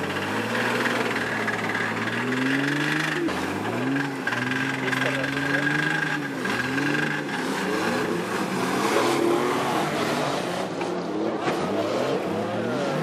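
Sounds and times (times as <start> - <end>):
engine revving: 0.0 - 13.0.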